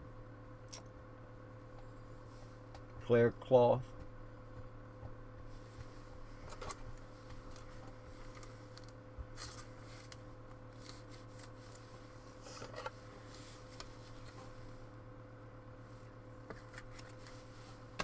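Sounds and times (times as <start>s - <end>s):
trading cards rustling and clicking: 5.8s - 11.8s.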